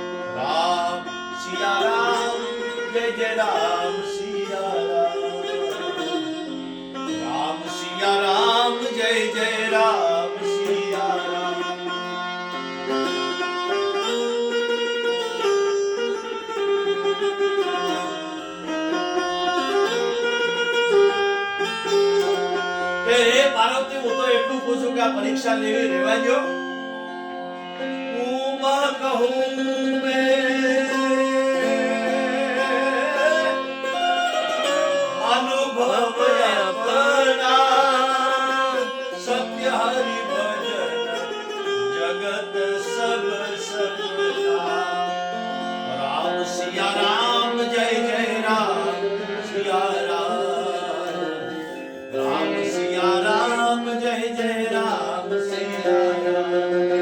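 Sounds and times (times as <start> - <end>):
devotional singing voice: 0.0 - 5.8, 28.2 - 33.7, 35.1 - 41.2, 45.9 - 56.7
instrumental accompaniment: 0.0 - 57.0.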